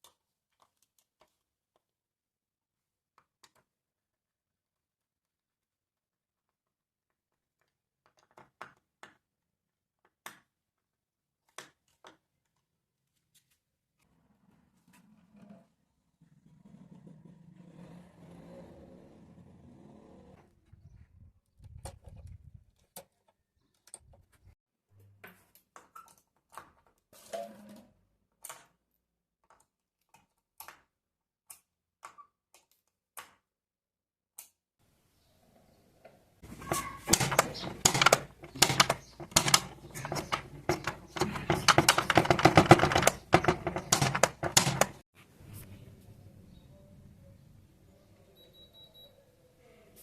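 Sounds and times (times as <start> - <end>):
rapid clicking and rattling: 36.4 - 45.0.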